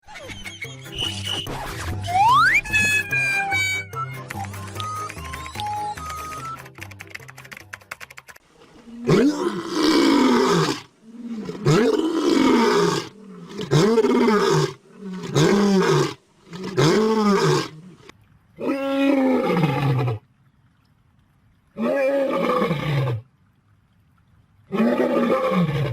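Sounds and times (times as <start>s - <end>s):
lion roaring: 8.9s - 20.2s.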